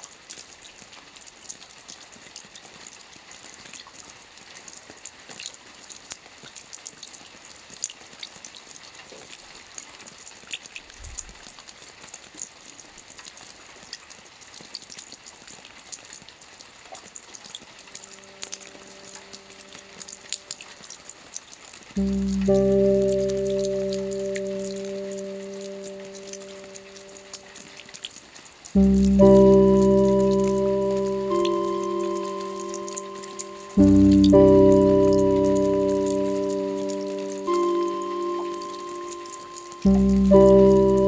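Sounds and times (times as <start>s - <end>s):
steady rain: 0.0s - 41.0s
soft sustained musical tones: 18.0s - 20.4s, 22.0s - 27.8s, 28.8s - 41.0s
loud chord: 22.0s - 27.6s, 28.8s - 41.0s.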